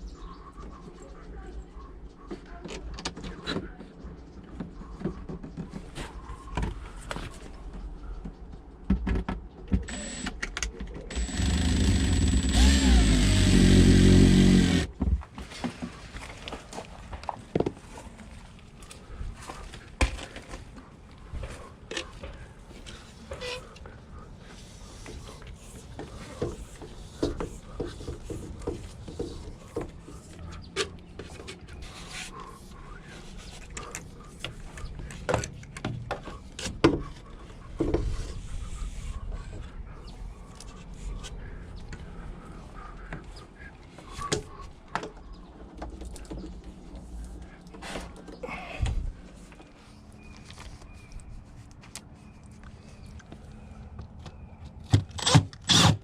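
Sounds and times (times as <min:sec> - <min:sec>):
cordless drill whining: 0:09.9 - 0:10.4, 0:11.1 - 0:14.9, 0:55.2 - 0:56.0.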